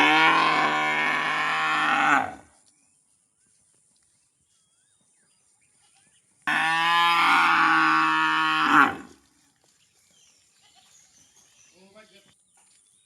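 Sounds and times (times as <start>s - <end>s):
cow mooing: 0.0s - 2.4s, 6.5s - 9.1s.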